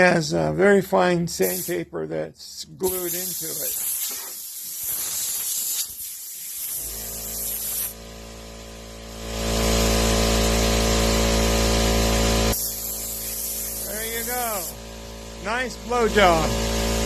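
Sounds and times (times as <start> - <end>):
compressed air hissing from nozzle: 1.4 - 1.8, 2.8 - 8.0, 12.5 - 14.8
air compressor motor humming: 2.9 - 17.0.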